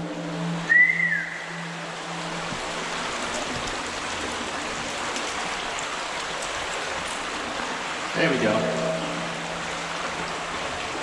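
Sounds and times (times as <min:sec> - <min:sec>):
water echoing through culvert: 0:00.0 - 0:11.0
short high whistle-like note: 0:00.7 - 0:01.6.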